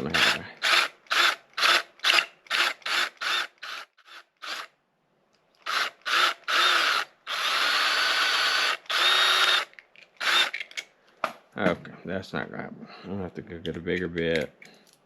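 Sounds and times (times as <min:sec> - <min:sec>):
power drill boring into metal: 0:00.0 - 0:04.7, 0:05.6 - 0:10.7.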